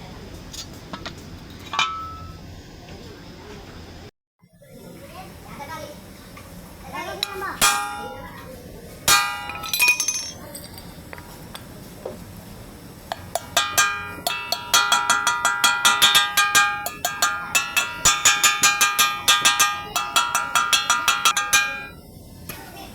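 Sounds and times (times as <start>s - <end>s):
hammer striking metal: 7.2s - 8.4s, 9.1s - 10.4s, 13.1s - 22.0s.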